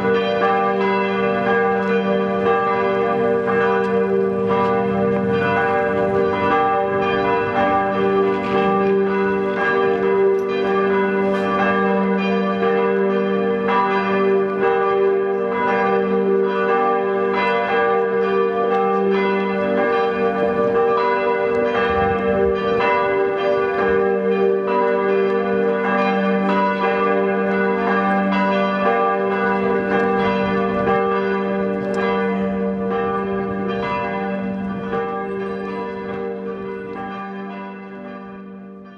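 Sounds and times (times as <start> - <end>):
church bells pealing: 0.0 - 38.9.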